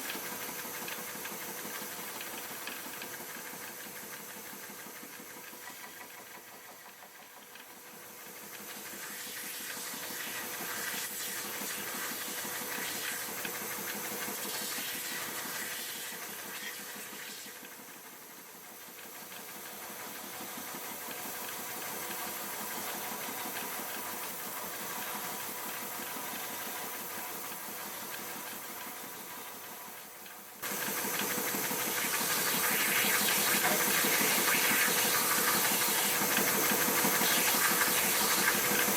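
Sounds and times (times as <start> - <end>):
electric woodworking power tool: 8.6 - 18.1, 30.6 - 38.9.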